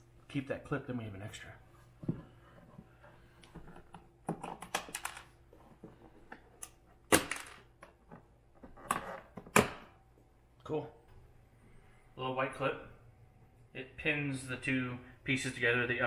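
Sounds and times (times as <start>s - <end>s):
plastic parts clicking and knocking: 3.4s - 9.8s.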